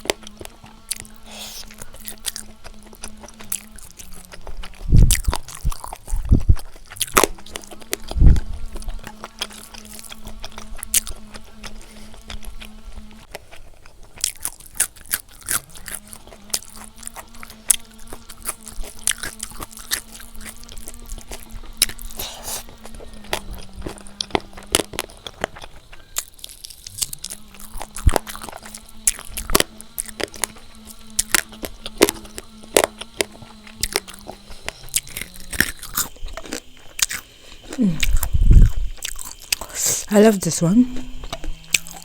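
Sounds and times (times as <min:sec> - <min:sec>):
person chewing food: 0:00.0 - 0:40.1, 0:40.9 - 0:42.0
low steady hum: 0:00.0 - 0:42.0
mouth clicks: 0:21.8 - 0:40.1.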